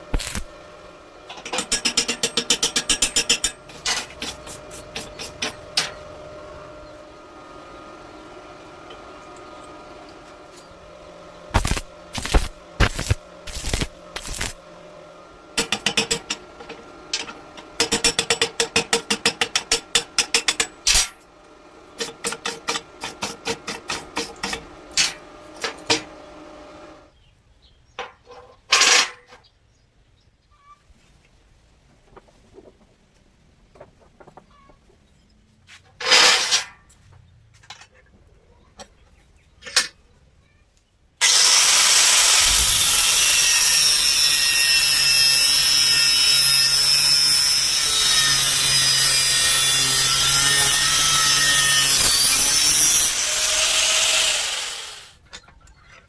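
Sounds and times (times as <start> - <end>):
electric welding machine humming: 0.0 - 18.7, 41.2 - 55.2.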